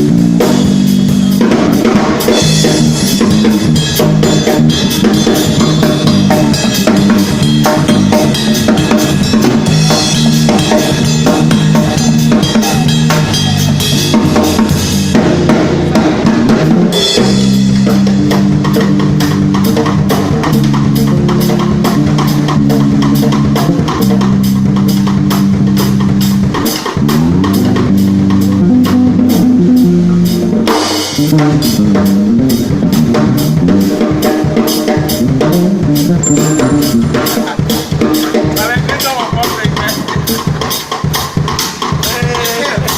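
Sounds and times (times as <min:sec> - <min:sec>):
drum kit beat: 0:00.0 - 0:42.9
held low pitched notes: 0:35.2 - 0:37.6.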